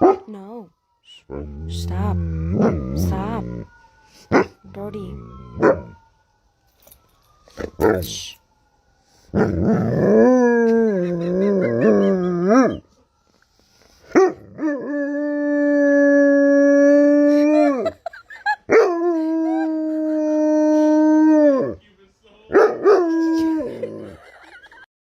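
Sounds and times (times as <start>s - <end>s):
dog howling: 1.3s - 3.7s, 9.4s - 12.8s, 18.7s - 21.8s, 22.5s - 24.1s.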